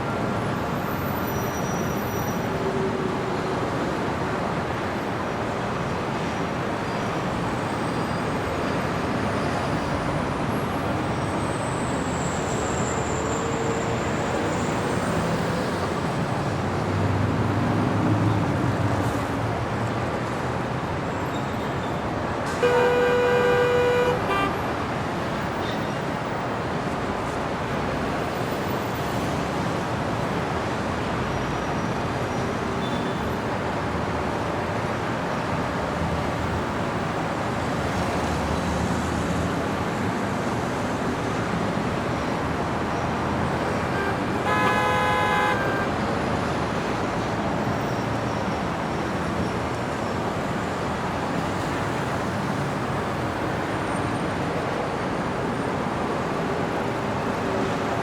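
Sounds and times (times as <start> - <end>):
passing cars: 0.0 - 58.0
car horn: 22.6 - 24.7, 43.7 - 46.0.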